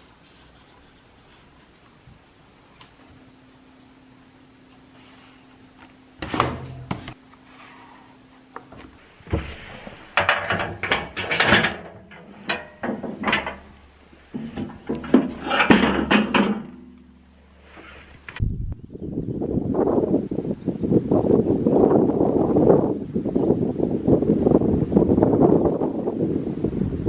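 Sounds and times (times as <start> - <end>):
handling knocks and rattling: 6.2 - 7.2, 8.6 - 17.6.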